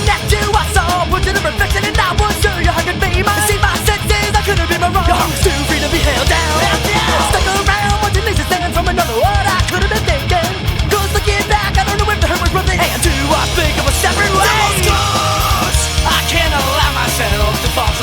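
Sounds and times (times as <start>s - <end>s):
bass guitar: 0.0s - 18.0s
distorted guitars: 0.0s - 18.0s
drums: 0.0s - 18.0s
person shouting vocals: 4.9s - 7.6s, 13.7s - 15.8s.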